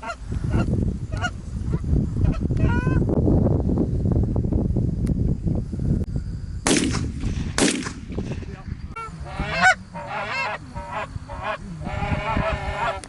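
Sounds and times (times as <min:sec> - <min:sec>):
geese honking: 0:00.0 - 0:01.4, 0:09.0 - 0:13.0
shotgun shots: 0:06.6 - 0:08.6.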